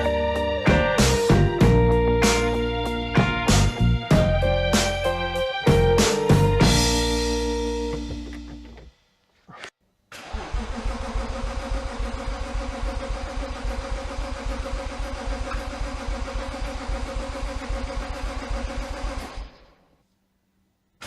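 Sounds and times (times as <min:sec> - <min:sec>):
car engine starting and idling: 0:06.6 - 0:08.9, 0:10.1 - 0:19.9.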